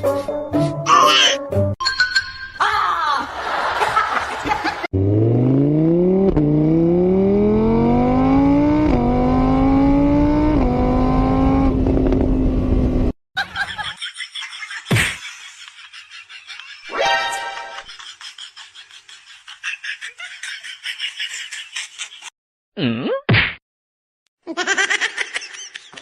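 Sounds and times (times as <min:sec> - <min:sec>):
car engine accelerating: 0:04.9 - 0:13.2.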